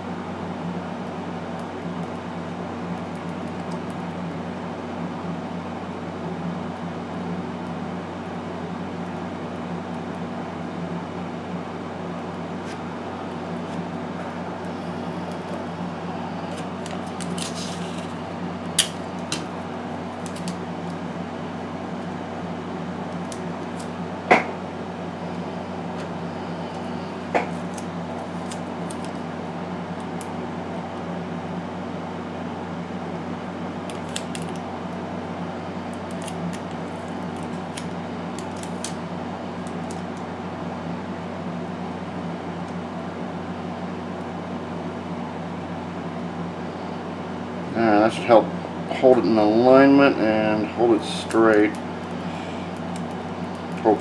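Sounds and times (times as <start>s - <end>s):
air conditioner hum: 0.0s - 54.0s
plastic parts tapping and clicking: 16.5s - 19.5s.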